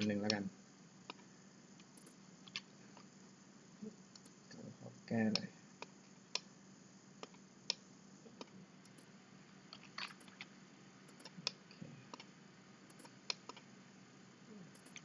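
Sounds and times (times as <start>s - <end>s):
faint electrical hum: 0.0s - 15.0s
mouse and keyboard clicks: 9.7s - 10.5s, 11.1s - 11.4s, 12.9s - 13.7s, 14.8s - 15.0s.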